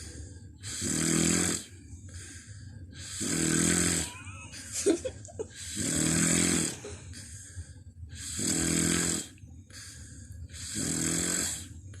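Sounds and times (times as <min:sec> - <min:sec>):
man snoring: 0:00.6 - 0:01.7, 0:03.0 - 0:04.5, 0:05.6 - 0:06.9, 0:08.2 - 0:09.4, 0:10.6 - 0:11.8
breathy exhale: 0:09.7 - 0:10.8.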